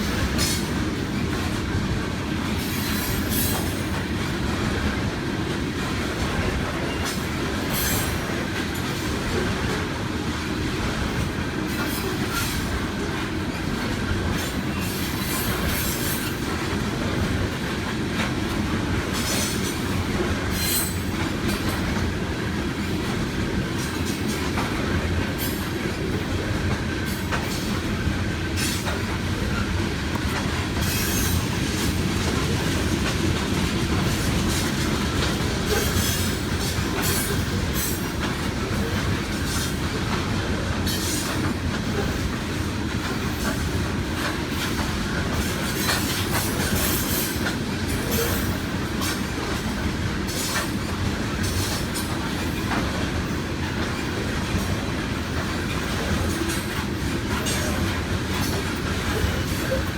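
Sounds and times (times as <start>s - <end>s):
freight train wheels on rails: 0.0s - 59.9s
wheel squeals: 30.8s - 31.5s.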